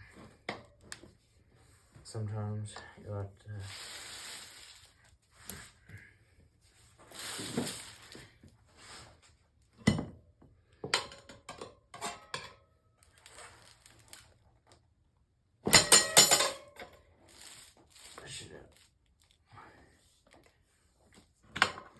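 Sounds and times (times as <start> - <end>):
tire irons clinking on metal rim: 15.8 - 17.0.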